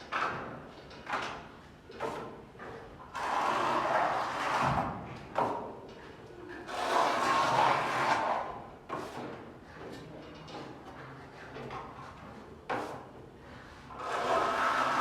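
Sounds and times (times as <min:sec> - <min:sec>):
tool scraping across wall: 0:03.0 - 0:05.6, 0:06.7 - 0:09.3, 0:12.7 - 0:15.0.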